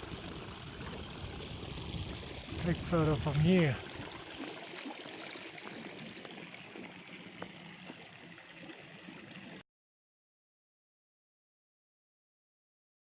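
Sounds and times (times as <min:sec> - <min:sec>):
water lapping at shore: 0:00.0 - 0:09.6.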